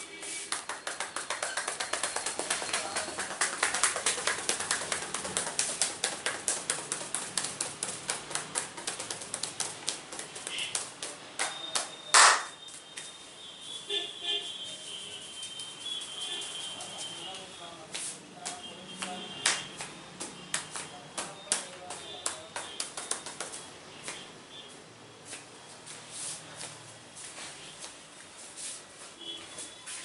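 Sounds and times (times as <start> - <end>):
hands tapping and slapping scalp: 0.2 - 13.1, 18.0 - 24.2.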